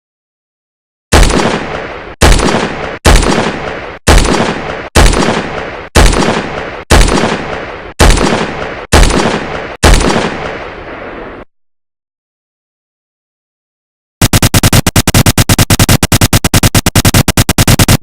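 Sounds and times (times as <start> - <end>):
gunshots with echo: 1.1 - 11.4, 14.2 - 18.0.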